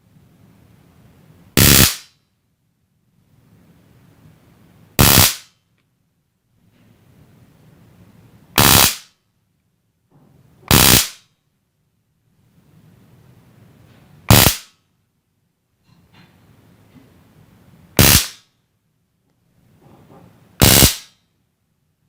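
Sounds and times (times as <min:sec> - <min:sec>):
stun gun zapping: 0:01.6 - 0:02.2, 0:05.0 - 0:05.6, 0:08.6 - 0:09.2, 0:10.7 - 0:11.3, 0:14.3 - 0:14.8, 0:18.0 - 0:18.5, 0:20.6 - 0:21.2.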